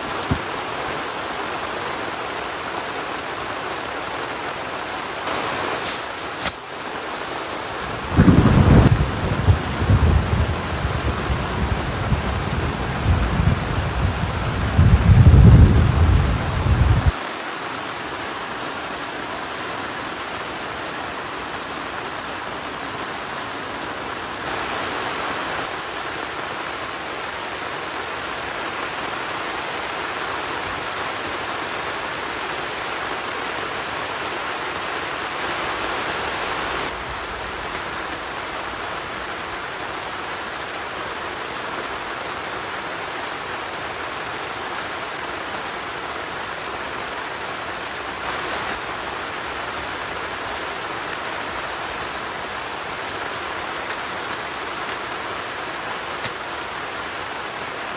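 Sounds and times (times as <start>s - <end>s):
heavy rain: 0.0s - 57.9s
thunder rumbling: 6.3s - 17.1s.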